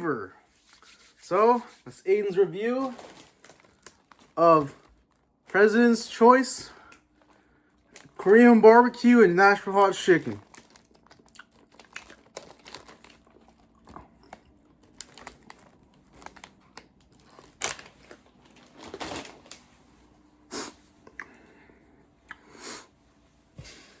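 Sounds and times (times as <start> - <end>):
plastic bag crinkling: 0.8 - 6.2, 7.1 - 9.0, 9.6 - 19.7.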